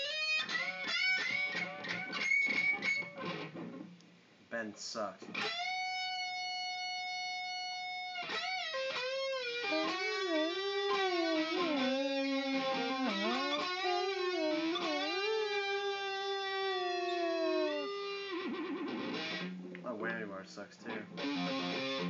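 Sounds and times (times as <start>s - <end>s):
electric guitar note bent: 5.3s - 19.9s, 20.9s - 22.0s.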